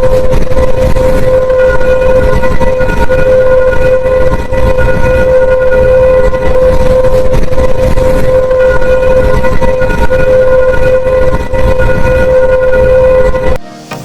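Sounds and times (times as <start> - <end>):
droning tone with overtones: 0.0 - 13.6
low rumbling noise: 0.0 - 13.6.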